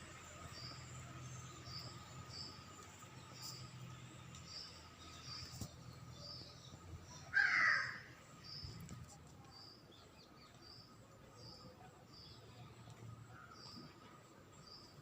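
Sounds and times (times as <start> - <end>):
crow cawing: 7.3 - 8.1.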